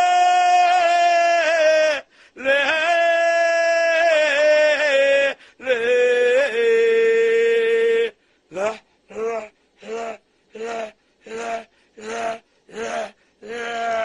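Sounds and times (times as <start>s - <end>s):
breaths: 2.0s - 2.4s, 5.4s - 5.6s, 8.2s - 13.4s
person chanting long held notes: 3.6s - 14.0s.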